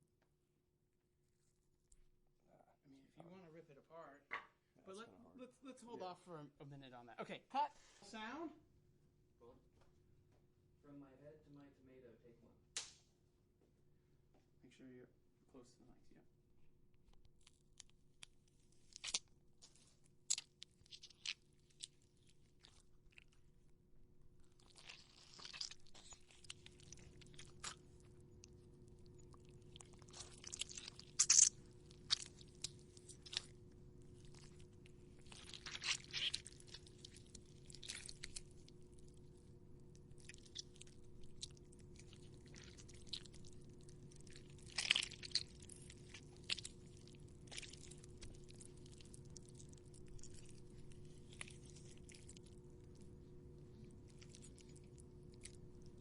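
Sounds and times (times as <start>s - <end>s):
tomato being squished: 17.4s - 23.4s, 24.6s - 53.1s.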